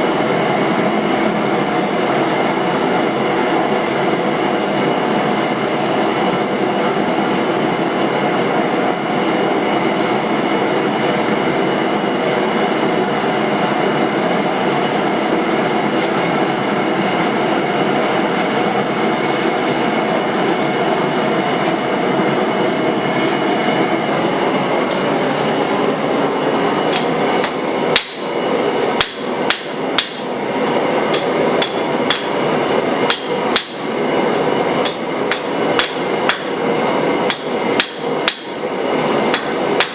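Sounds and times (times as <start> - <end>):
hammer striking steel on anvil: 26.9 - 28.3, 29.0 - 30.3, 31.1 - 32.4, 33.1 - 36.6, 37.3 - 38.6, 39.3 - 39.9.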